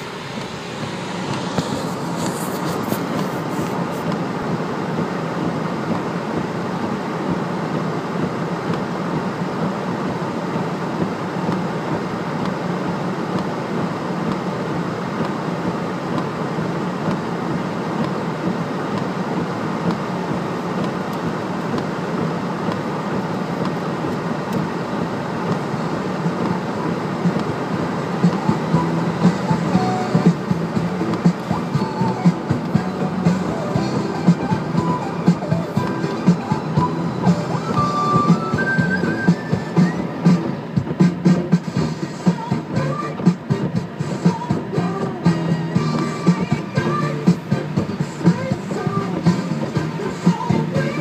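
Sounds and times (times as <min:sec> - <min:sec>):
tyre hiss on wet road: 0:00.0 - 0:06.2
car cabin rumble: 0:00.0 - 0:51.0.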